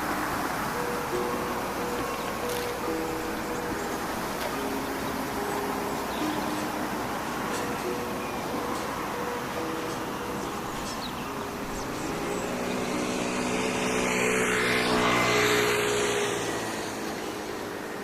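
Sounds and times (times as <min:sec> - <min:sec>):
vehicle driving past: 0:11.3 - 0:18.0.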